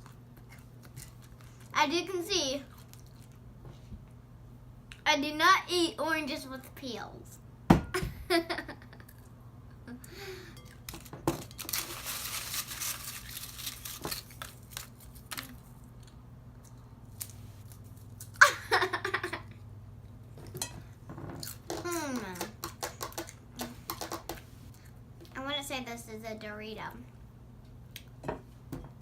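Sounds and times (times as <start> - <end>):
person giggling: 8.0 - 10.4, 18.4 - 19.6
food packaging crinkling rustle: 10.8 - 16.0.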